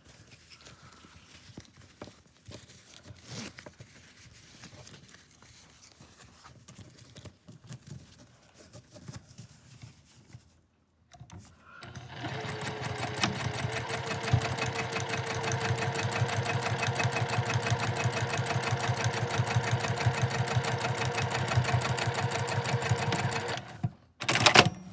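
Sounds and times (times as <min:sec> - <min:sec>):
sewing machine stitching: 0:11.8 - 0:24.9.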